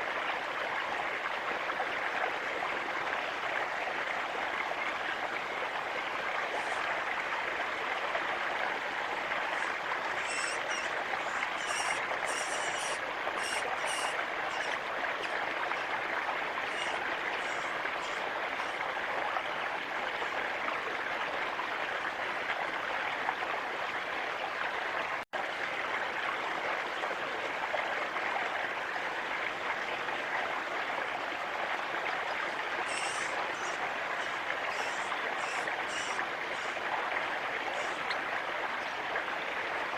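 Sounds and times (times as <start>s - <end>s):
running water rushing: 0.0s - 39.9s
high thin bird chirps: 10.2s - 14.8s, 32.9s - 33.7s.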